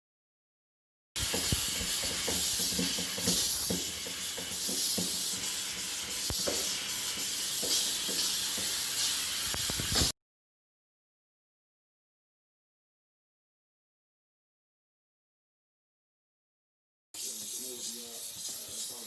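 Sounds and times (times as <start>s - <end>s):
steam cleaner hissing: 1.2s - 10.1s, 17.2s - 19.0s.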